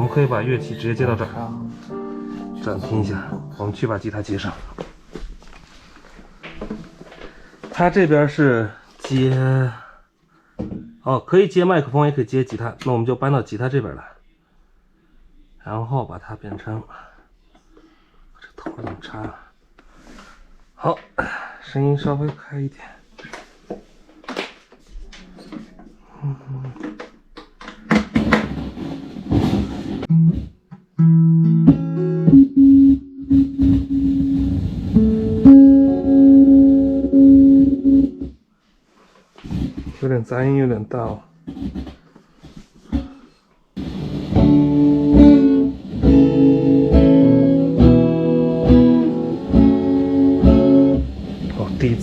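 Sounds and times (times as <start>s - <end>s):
amplified guitar notes ringing: 0.0s - 4.0s, 31.0s - 38.4s, 43.8s - 52.0s
scratchy guitar string noises: 31.2s - 38.3s, 41.4s - 43.2s, 43.8s - 52.0s
speaker background hiss: 48.7s - 52.0s.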